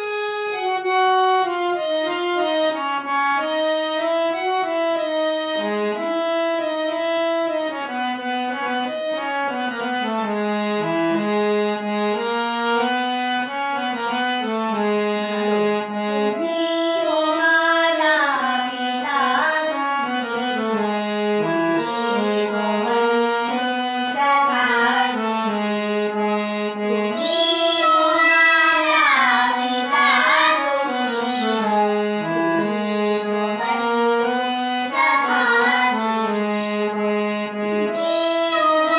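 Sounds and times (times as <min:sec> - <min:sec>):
reed-like keyboard melody: 0:00.0 - 0:38.9
girl singing: 0:16.8 - 0:19.8, 0:24.1 - 0:25.2, 0:27.1 - 0:31.9, 0:33.5 - 0:36.3, 0:37.9 - 0:38.9.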